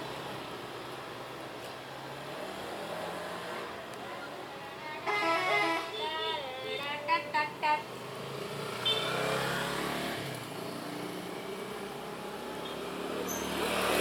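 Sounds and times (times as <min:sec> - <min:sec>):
bus and traffic driving past: 0:00.0 - 0:14.0
bus multi-tone horn toots: 0:05.0 - 0:07.8.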